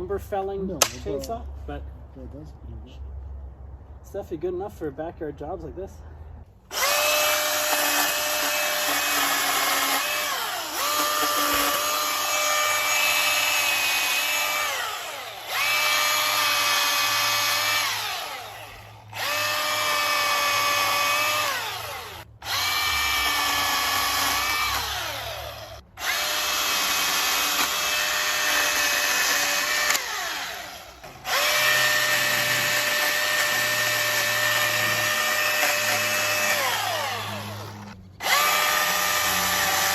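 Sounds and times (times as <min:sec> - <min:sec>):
chainsaw cutting wood: 0:06.7 - 0:39.9.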